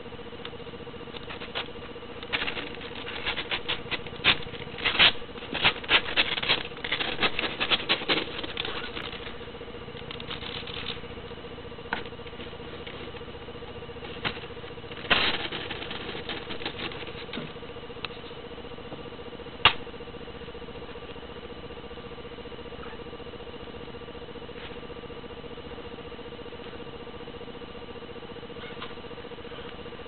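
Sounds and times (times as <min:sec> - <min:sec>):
low electrical hum: 0:00.0 - 0:30.0
kittens rustling on bedding: 0:01.2 - 0:09.4, 0:13.9 - 0:17.6.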